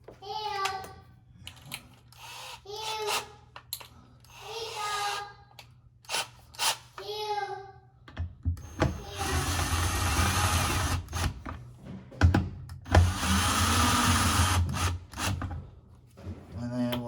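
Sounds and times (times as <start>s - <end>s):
power drill running: 2.2s - 2.6s, 8.6s - 11.4s, 12.9s - 15.4s.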